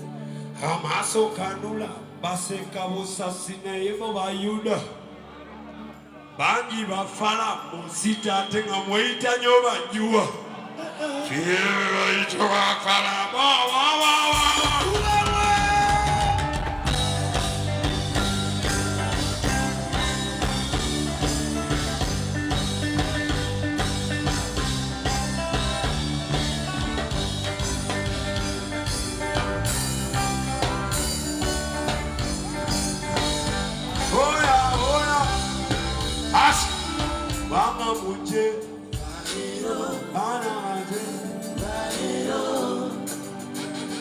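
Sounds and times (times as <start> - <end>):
person singing: 10.0 - 21.8, 28.8 - 44.0
live band playing a groove: 14.3 - 39.9, 40.6 - 44.0.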